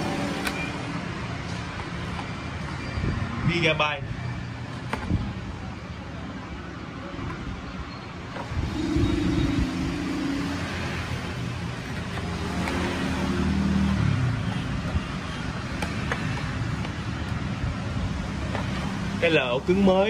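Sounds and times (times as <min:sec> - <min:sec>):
street traffic noise: 0:00.0 - 0:20.0
vehicle engine passing by: 0:08.6 - 0:11.6.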